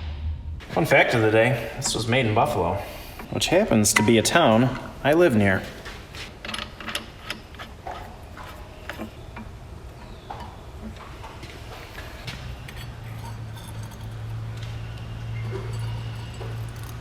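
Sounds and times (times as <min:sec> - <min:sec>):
metal parts and tools clicking: 0:06.3 - 0:11.0, 0:11.8 - 0:17.0.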